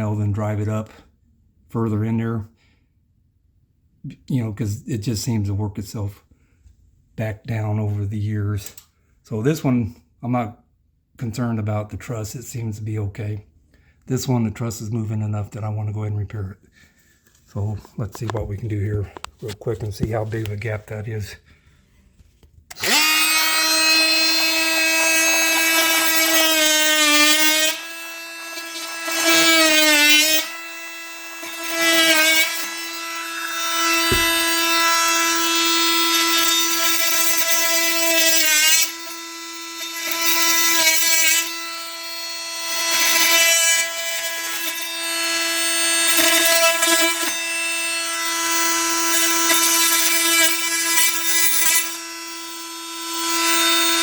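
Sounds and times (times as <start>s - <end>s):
oscillating multi-tool cutting drywall: 22.7s - 54.0s.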